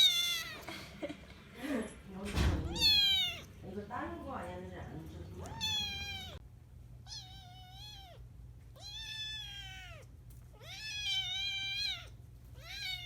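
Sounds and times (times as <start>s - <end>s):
kitten meowing: 0.0s - 0.6s, 2.6s - 3.5s, 5.4s - 6.4s, 7.0s - 8.2s, 8.8s - 13.0s.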